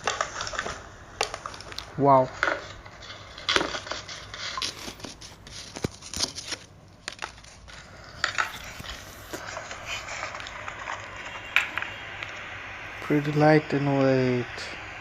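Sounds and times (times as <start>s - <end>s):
packing rustling and crinkling: 0.0s - 11.4s.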